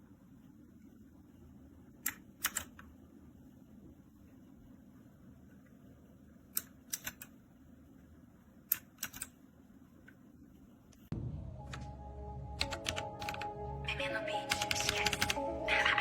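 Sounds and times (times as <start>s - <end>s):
mechanical keyboard keystrokes: 2.0s - 2.8s, 6.5s - 7.3s, 8.7s - 9.3s, 12.6s - 13.5s, 14.5s - 15.4s
loud low hum: 11.1s - 14.4s.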